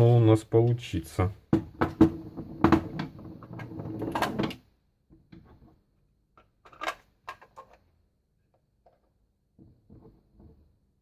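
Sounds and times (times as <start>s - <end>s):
plastic clicking and knocking: 1.5s - 5.8s, 6.4s - 7.9s.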